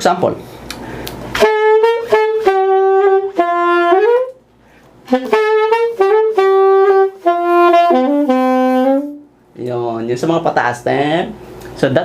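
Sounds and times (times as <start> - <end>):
alto saxophone phrases: 1.3 - 4.4, 5.0 - 9.3.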